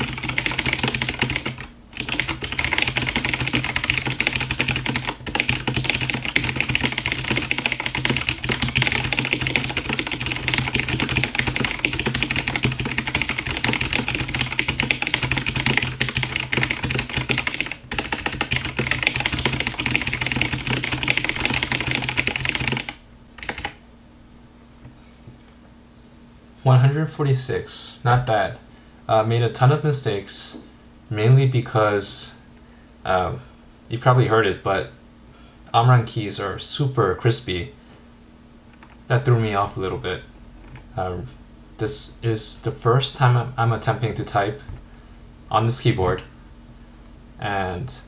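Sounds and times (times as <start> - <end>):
clicky mechanical keyboard typing: 0.0 - 23.8.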